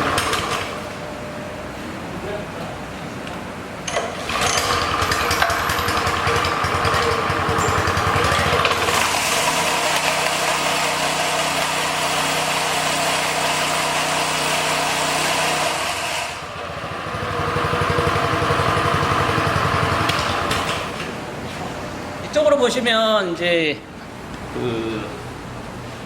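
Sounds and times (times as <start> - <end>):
power trowel engine running: 0.0 - 0.8, 3.9 - 21.2.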